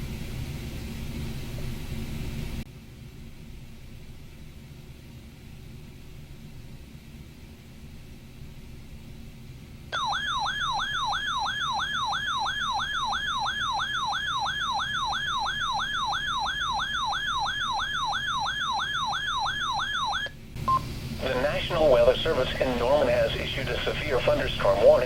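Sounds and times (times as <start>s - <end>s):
warbling alarm siren: 10.0s - 20.4s.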